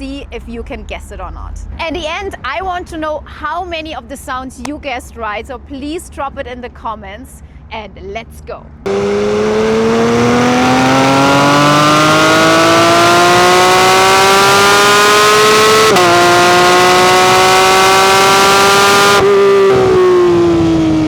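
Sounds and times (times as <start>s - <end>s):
sports car engine at full throttle: 8.8s - 21.0s.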